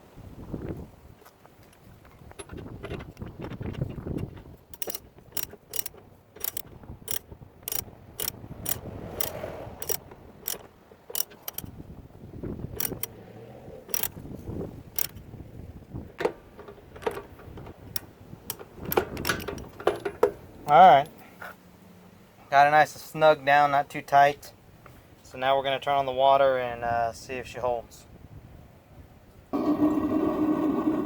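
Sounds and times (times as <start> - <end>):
ratchet wrench clicking: 4.1 - 11.8, 12.7 - 13.1, 13.9 - 14.2, 14.9 - 15.2.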